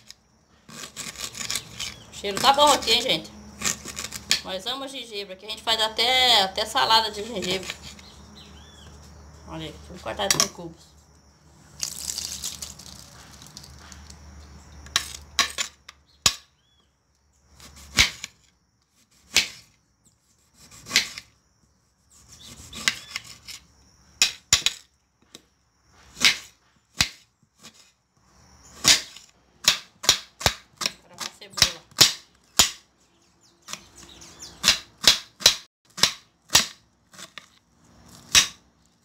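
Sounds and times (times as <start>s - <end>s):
rustle: 11.0s - 16.0s.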